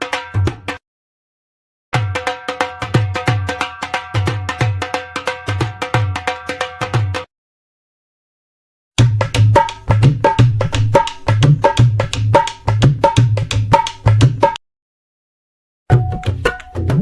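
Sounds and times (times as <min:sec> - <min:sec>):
fast drum rhythm: 0:09.0 - 0:14.6, 0:15.9 - 0:17.0.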